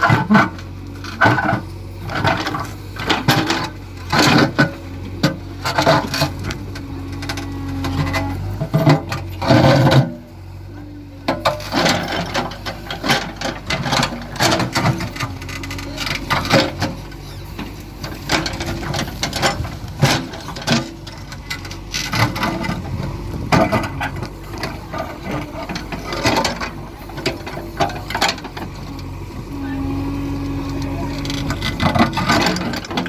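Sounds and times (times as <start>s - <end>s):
backhoe diesel engine: 0.0s - 33.0s
clanks knocks and scrapes on stone: 31.4s - 33.0s.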